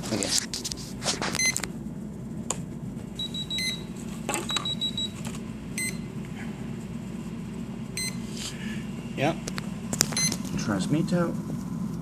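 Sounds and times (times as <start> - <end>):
electronic speed controller beeping: 3.2 - 3.9, 4.5 - 5.1.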